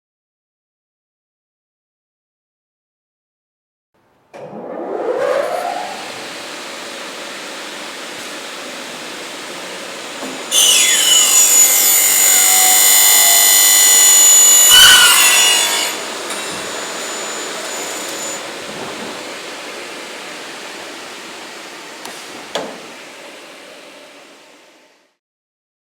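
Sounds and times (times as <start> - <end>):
saw blades whining: 4.4 - 24.6.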